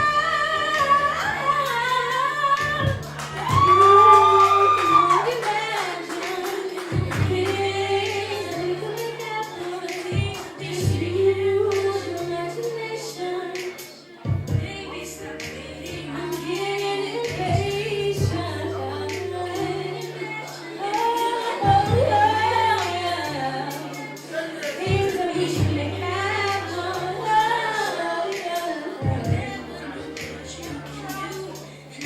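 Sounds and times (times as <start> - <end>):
held bass notes: 0.0 - 5.7, 6.9 - 9.5, 10.1 - 12.6, 14.3 - 20.2, 21.6 - 23.9, 24.9 - 27.7, 29.0 - 31.8
person singing: 0.0 - 32.0
low drum thumps: 2.8 - 4.1, 6.9 - 7.7, 10.2 - 11.2, 14.3 - 14.8, 17.4 - 18.6, 21.6 - 22.2, 24.9 - 26.1, 29.0 - 29.5.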